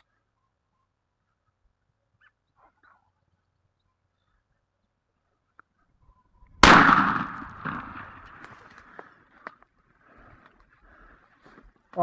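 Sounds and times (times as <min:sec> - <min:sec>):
shotgun shot: 0:06.6 - 0:08.6.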